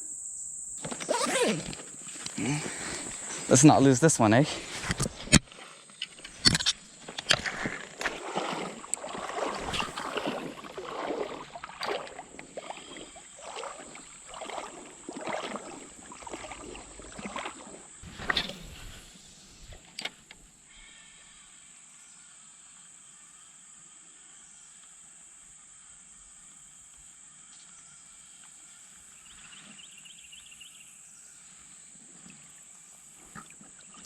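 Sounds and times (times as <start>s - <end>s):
water sloshing from wading: 4.5s - 20.0s.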